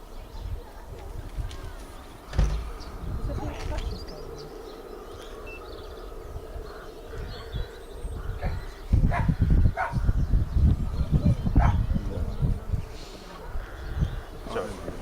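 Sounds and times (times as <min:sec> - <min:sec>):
loud low rumbling: 0:02.3 - 0:04.9.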